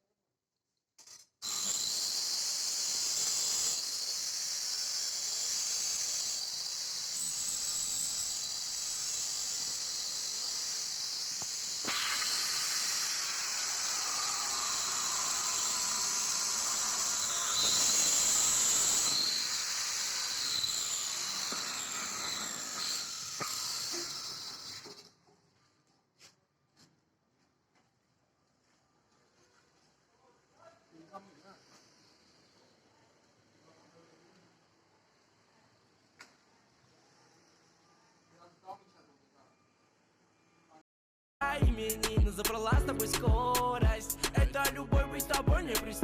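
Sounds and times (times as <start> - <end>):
loud steady hiss: 1.5 - 24.7.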